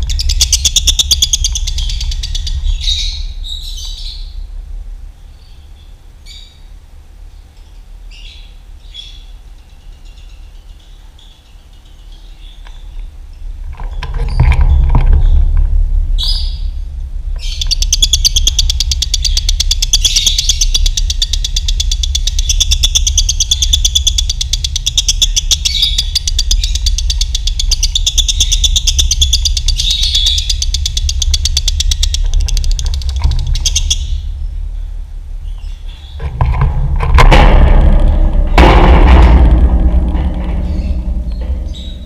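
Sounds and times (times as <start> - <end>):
bird chattering trill: 0.0 - 4.4, 17.5 - 34.3
steady low rumble: 0.0 - 9.7, 11.8 - 42.0.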